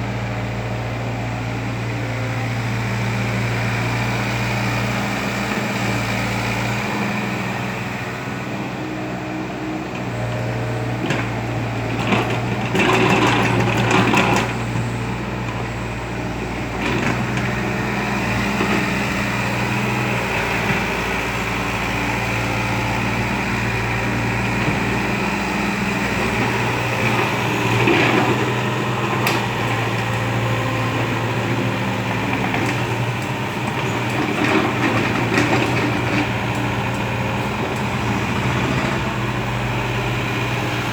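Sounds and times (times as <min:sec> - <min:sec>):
excavator diesel engine running: 0:00.0 - 0:40.9
clattering and rattling: 0:10.1 - 0:15.7, 0:26.1 - 0:39.4.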